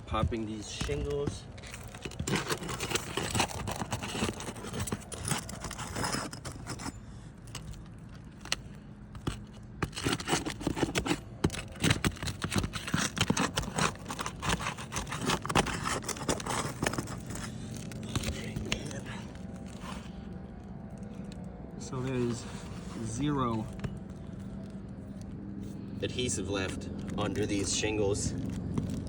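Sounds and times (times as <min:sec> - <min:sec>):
roof shingles being pried loose: 0:00.1 - 0:20.2.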